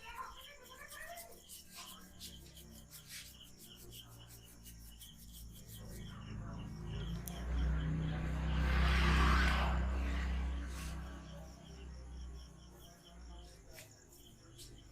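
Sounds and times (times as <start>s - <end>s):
hands rubbing scalp and hair: 0.0s - 6.2s
low rumble: 6.1s - 12.5s.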